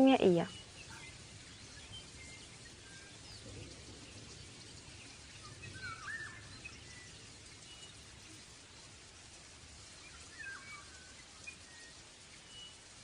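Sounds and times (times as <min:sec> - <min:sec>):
faint background hiss: 0:00.0 - 0:13.0
bird chirps: 0:00.2 - 0:08.8.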